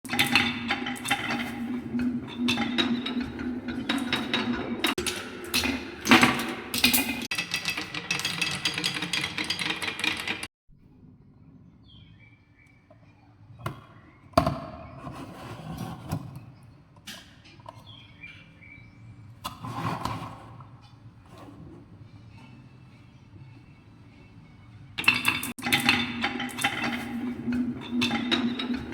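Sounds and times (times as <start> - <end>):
birds chirping: 17.6 - 19.4.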